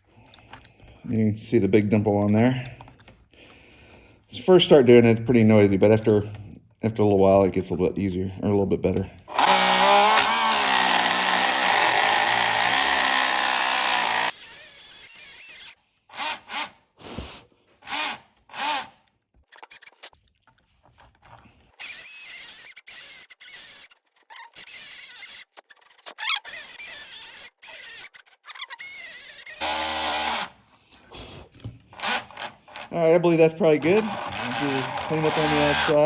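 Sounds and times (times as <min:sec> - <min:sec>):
knife scraping spinning wheel: 0:14.3 - 0:15.8, 0:19.5 - 0:20.1, 0:21.8 - 0:29.6.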